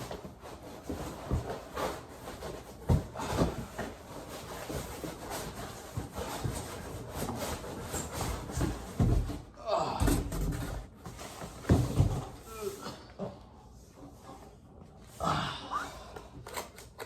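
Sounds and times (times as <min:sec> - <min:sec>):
thumps and knocks on cardboard: 0:00.8 - 0:03.9, 0:04.6 - 0:12.4.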